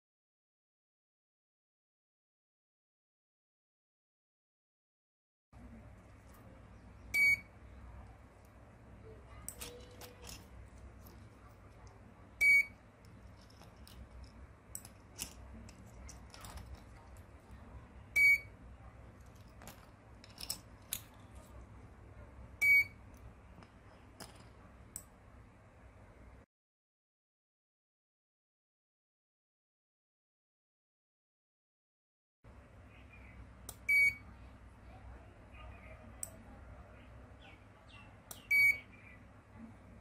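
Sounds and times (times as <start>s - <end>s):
door lock buzzer beeps: 7.1s - 7.5s, 12.4s - 12.8s, 18.2s - 18.5s, 22.6s - 23.0s, 33.8s - 34.2s, 38.5s - 38.9s.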